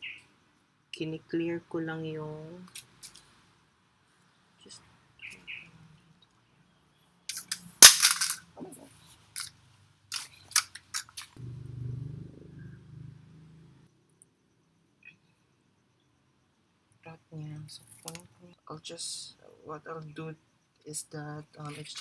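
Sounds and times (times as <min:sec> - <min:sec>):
sharp clicks and snaps: 0:10.1 - 0:11.4.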